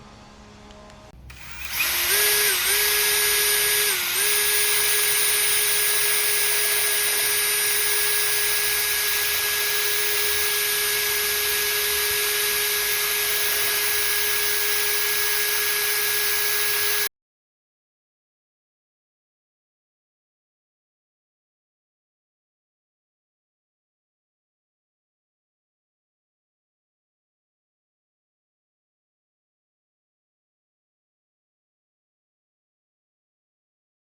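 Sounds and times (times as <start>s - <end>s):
small electric motor whining: 1.2s - 17.1s.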